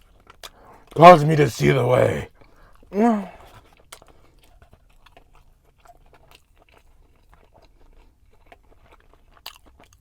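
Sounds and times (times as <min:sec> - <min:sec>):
person chewing food: 0:03.7 - 0:10.0.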